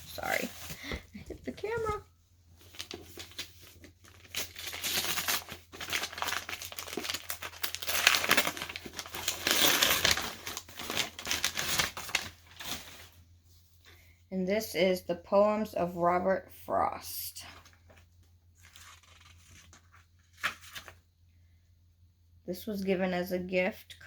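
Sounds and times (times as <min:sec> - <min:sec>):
wrapping crinkling and rustling: 0:00.0 - 0:13.2, 0:17.5 - 0:21.1.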